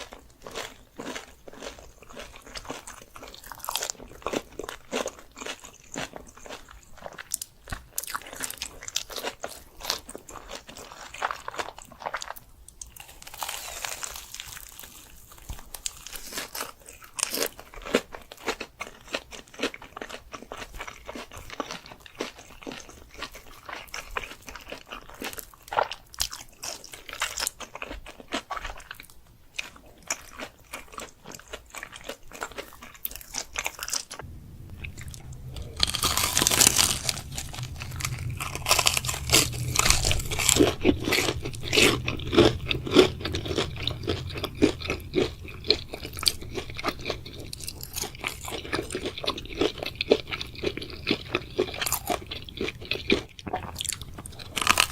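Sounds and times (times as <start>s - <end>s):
person crunching and chewing food: 0.0s - 54.9s
low hum: 34.2s - 54.9s.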